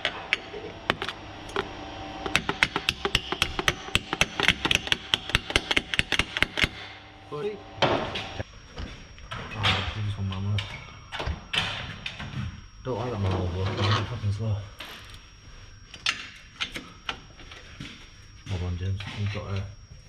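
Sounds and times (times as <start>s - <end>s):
hand ratchet clicking: 2.3s - 6.8s.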